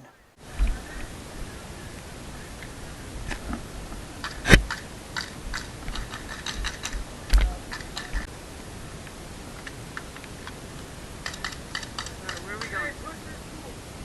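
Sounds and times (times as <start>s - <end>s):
steady hiss: 0.0s - 14.0s
sharp clicks and knocks: 4.2s - 8.3s, 11.2s - 12.8s.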